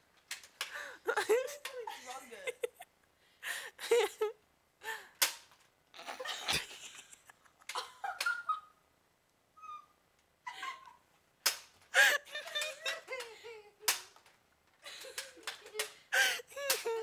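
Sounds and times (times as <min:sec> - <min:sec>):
stifled giggling: 0:03.8 - 0:04.4, 0:06.0 - 0:08.8, 0:10.4 - 0:11.1, 0:12.0 - 0:13.9, 0:14.8 - 0:17.0.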